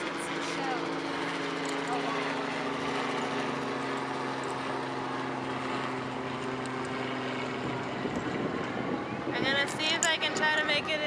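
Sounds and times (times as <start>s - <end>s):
engine drone: 0.0s - 11.0s
wind noise: 7.4s - 11.0s.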